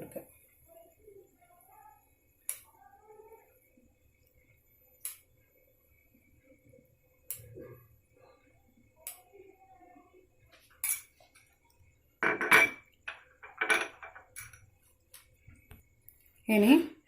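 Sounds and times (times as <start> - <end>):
utensils clinking against pans: 12.2 - 14.6.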